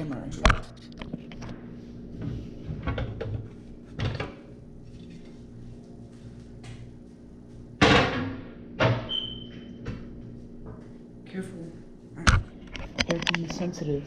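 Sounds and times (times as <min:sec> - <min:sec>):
faint steady hum: 0:00.0 - 0:14.0
objects knocking and clattering: 0:02.6 - 0:04.4.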